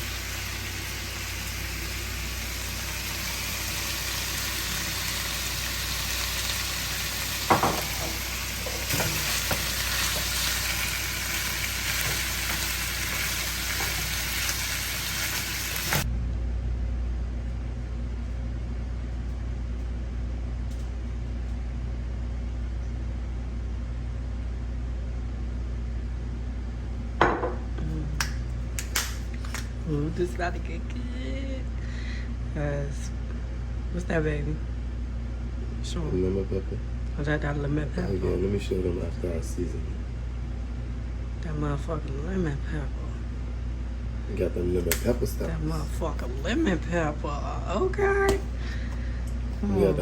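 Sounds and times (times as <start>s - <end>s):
food sizzling in oil: 0.0s - 16.1s
steady low hum: 0.0s - 50.0s
utensil knocking against pan: 7.5s - 9.6s.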